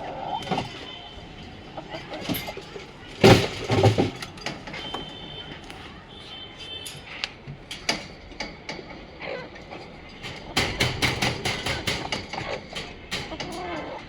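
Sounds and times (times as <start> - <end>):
sharp clicks and knocks: 6.6 - 14.0.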